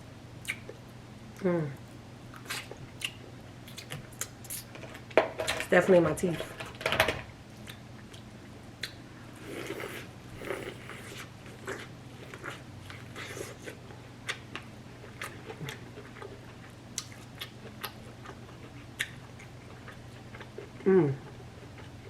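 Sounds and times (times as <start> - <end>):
faint low hum: 0.0 - 22.0
person chewing food: 2.3 - 5.1, 7.5 - 22.0.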